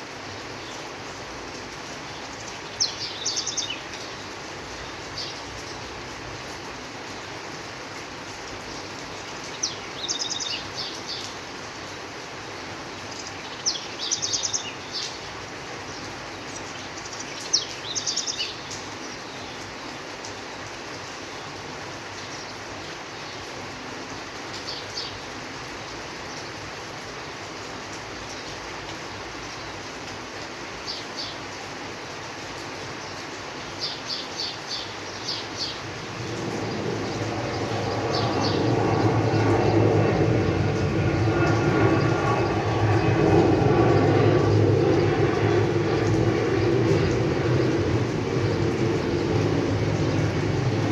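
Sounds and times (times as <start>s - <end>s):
steady rain falling: 0.0s - 50.9s
birds chirping: 34.2s - 50.9s.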